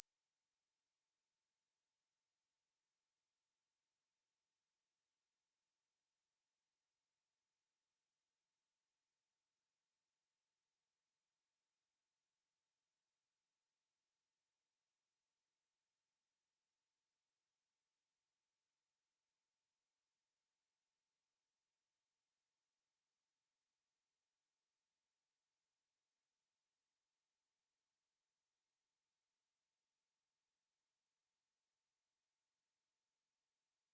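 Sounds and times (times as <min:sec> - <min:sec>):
high-pitched sine test tone: 0:15.7 - 0:33.9.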